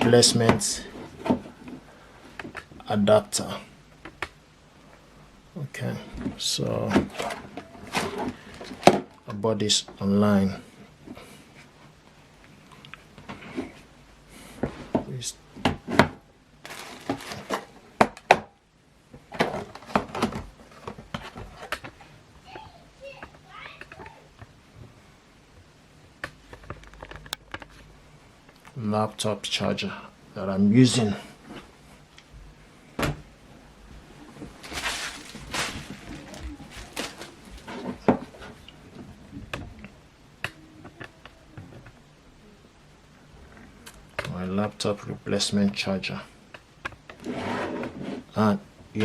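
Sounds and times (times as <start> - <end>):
rustling: 6.0 - 9.1, 16.6 - 18.0, 30.9 - 40.0.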